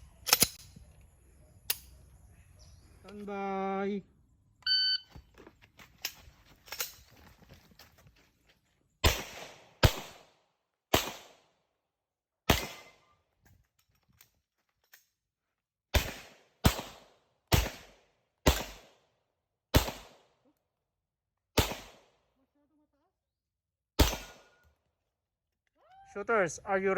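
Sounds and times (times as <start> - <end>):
pistol shots: 9.0 - 11.5, 12.5 - 13.0, 16.0 - 19.0, 19.7 - 20.4, 21.6 - 22.2, 24.0 - 24.6.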